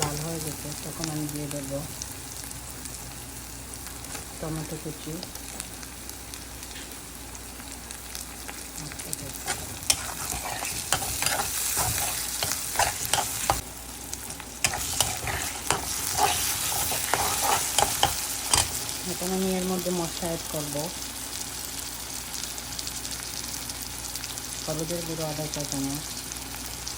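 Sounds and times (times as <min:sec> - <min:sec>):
vegetables sizzling in hot oil: 0:00.0 - 0:26.9
spatula scraping the pan: 0:09.4 - 0:13.6, 0:14.6 - 0:18.9.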